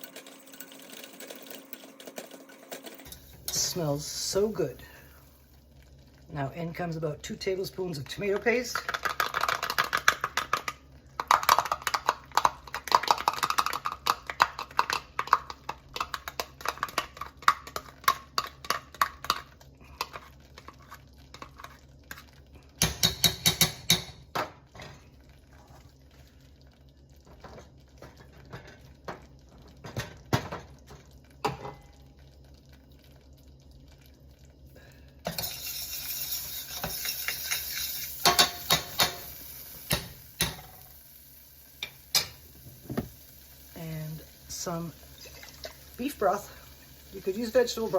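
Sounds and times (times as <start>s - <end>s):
wire whisk scraping a pan: 35.3s - 38.4s.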